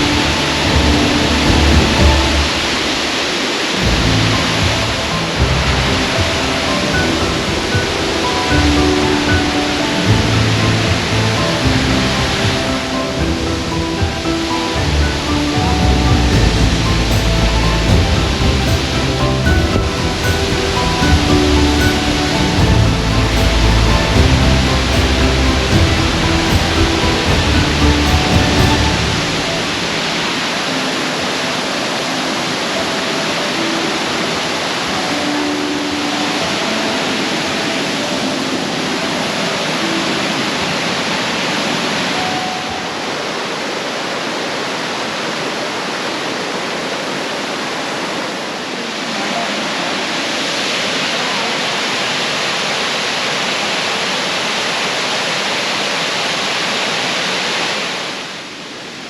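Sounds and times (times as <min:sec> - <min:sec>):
waterfall rushing water: 0:00.0 - 0:59.0.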